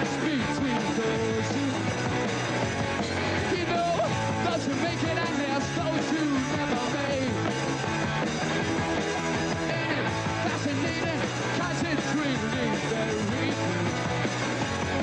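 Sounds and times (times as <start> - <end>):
electric guitar: 0.0 - 15.0
punk rock band music: 0.0 - 15.0.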